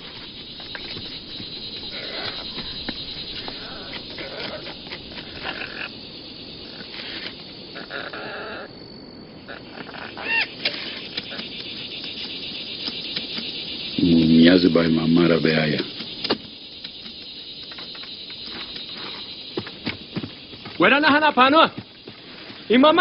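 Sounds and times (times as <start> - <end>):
insects and frogs hissing: 0.0 - 23.0
animal calls: 1.7 - 6.0, 6.6 - 12.2
rising and falling animal call: 1.9 - 2.8, 3.4 - 6.0, 7.7 - 11.6.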